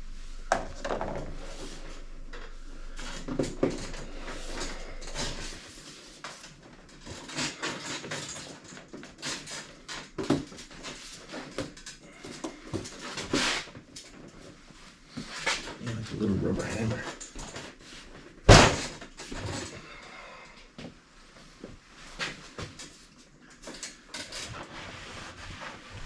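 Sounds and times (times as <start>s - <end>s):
faint low hum: 0.0s - 6.2s.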